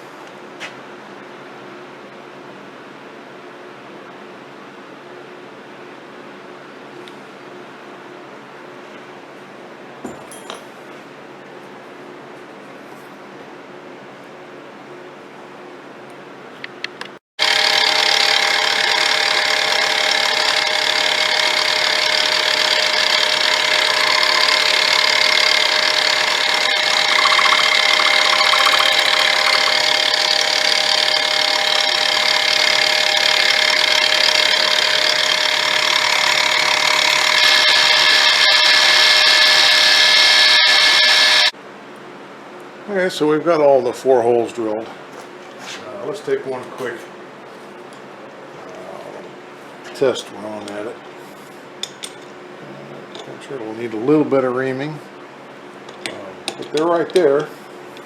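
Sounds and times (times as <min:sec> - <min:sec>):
power drill whining: 0:17.4 - 0:41.5.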